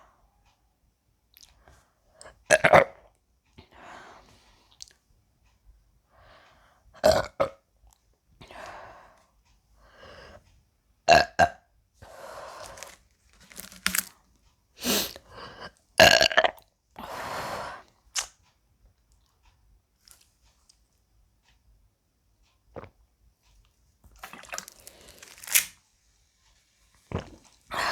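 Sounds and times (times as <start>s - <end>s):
woman burping: 11.1s - 11.6s, 16.0s - 16.6s.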